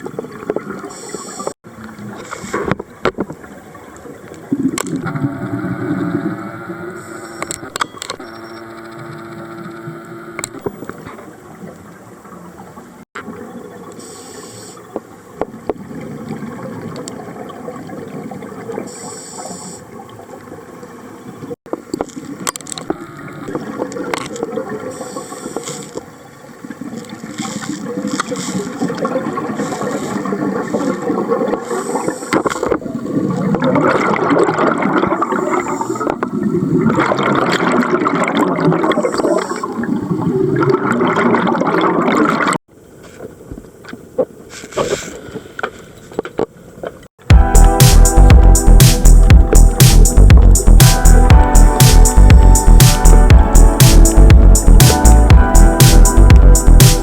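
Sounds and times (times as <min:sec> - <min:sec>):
regulator inhalation hiss: 0:14.0 - 0:14.8, 0:18.9 - 0:19.8, 0:24.9 - 0:25.9
exhaled bubbles gurgling: 0:26.7 - 0:42.6.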